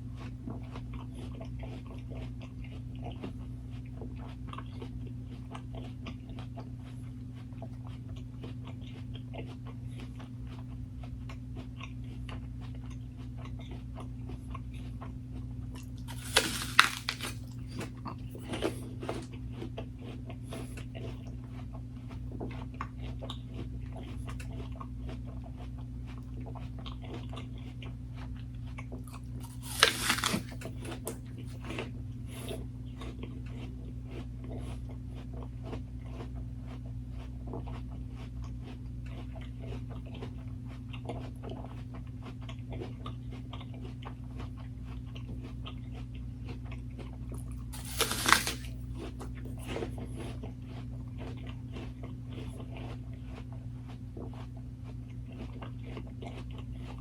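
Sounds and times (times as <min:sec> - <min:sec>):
close chewing with mouth clicks: 0:00.0 - 0:57.0
steady low hum: 0:00.0 - 0:57.0
crunching bites: 0:15.8 - 0:19.4, 0:29.0 - 0:33.2, 0:47.3 - 0:50.4.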